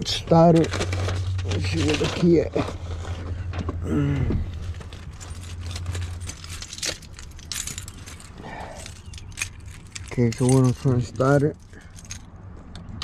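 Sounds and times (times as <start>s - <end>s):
keys jingling: 4.5s - 13.0s.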